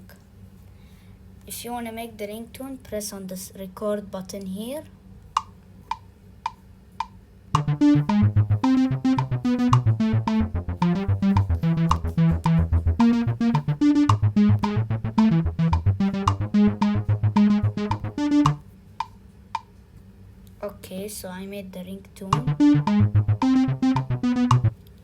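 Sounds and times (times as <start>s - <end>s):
metronome ticking: 7.6s - 18.6s, 22.4s - 24.8s
synthesized bass notes: 7.6s - 18.6s, 22.4s - 24.8s.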